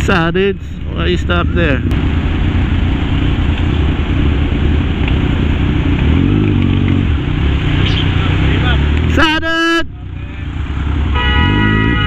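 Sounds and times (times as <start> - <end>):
motorcycle engine running: 1.6 - 9.2.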